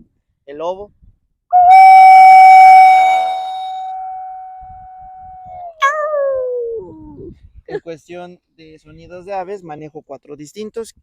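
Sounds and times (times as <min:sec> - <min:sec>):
clay whistle howling: 0:01.5 - 0:06.9
higher falling whistle note: 0:01.5 - 0:07.0.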